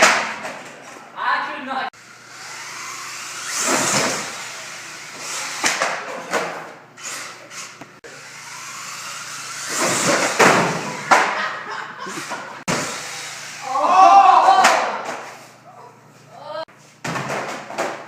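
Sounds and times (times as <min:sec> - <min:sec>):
rc car motor and tyre noise: 0:02.0 - 0:06.3, 0:07.0 - 0:11.1, 0:12.1 - 0:13.8.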